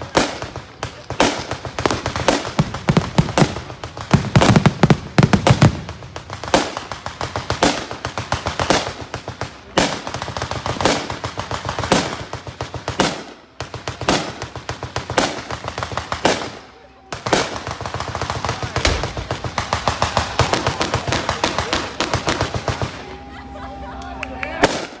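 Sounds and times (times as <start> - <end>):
rapid crackling gunfire: 0.0 - 23.0, 24.6 - 25.0
heavy gun bangs: 17.3 - 22.9.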